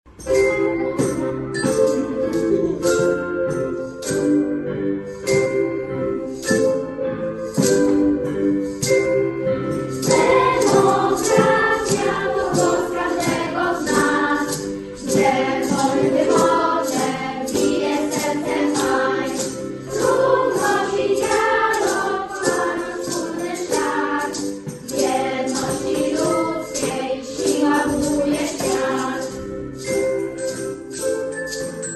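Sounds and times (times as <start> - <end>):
crisp high percussion: 0.1 - 31.9
group of voices singing: 10.0 - 30.0.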